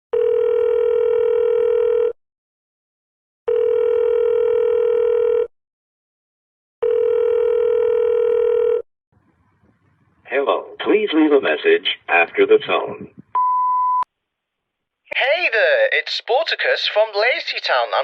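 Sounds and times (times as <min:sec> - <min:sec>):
telephone ringing tone beeps: 0:00.2 - 0:02.2, 0:03.5 - 0:05.5, 0:06.8 - 0:08.8.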